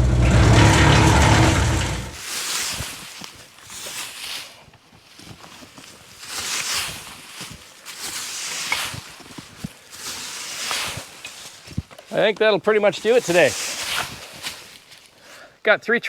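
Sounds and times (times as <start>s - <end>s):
tractor diesel engine running: 0.0s - 2.2s
rustling noise: 0.0s - 15.2s.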